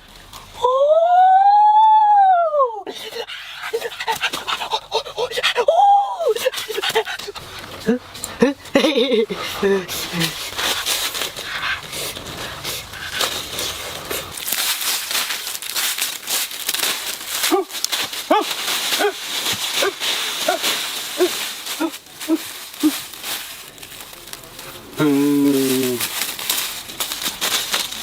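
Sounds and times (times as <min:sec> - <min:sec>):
steady crackling noise: 0:06.3 - 0:28.0.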